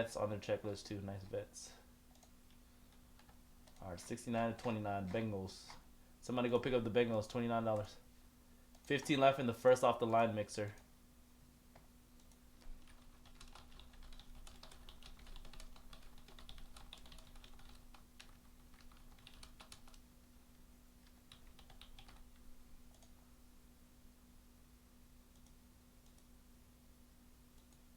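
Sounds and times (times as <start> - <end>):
faint keyboard typing: 2.1 - 5.8, 6.6 - 8.0, 11.7 - 23.2, 25.3 - 26.4, 27.5 - 27.9.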